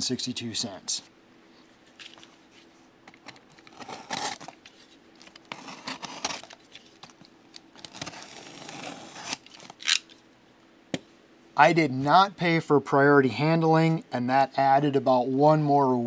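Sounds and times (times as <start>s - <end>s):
packaging rustling and crinkling: 1.8s - 10.3s
wrapping tearing: 1.9s - 10.2s.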